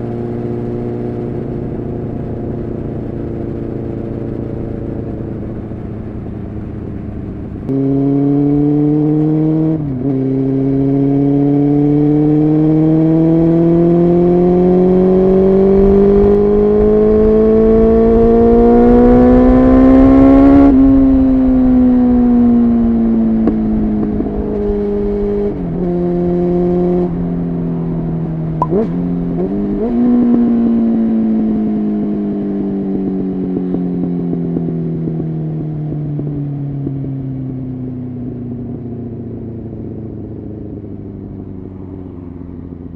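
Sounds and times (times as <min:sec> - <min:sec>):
motorcycle engine revving: 0:00.0 - 0:42.9
throttle blip: 0:28.6 - 0:28.8.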